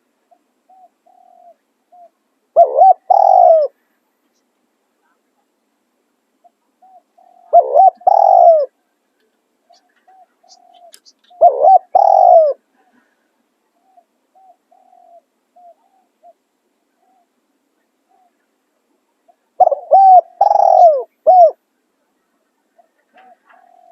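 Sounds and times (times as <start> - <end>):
doves cooing: 0.3 - 3.8, 6.4 - 8.8, 9.7 - 17.4, 19.3 - 21.6, 22.6 - 23.9.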